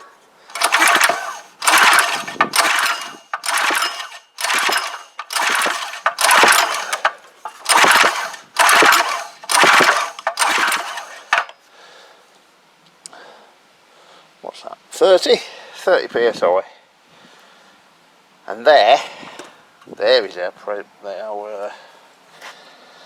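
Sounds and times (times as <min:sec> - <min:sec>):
engine pull-starter whirring: 0:00.5 - 0:11.6.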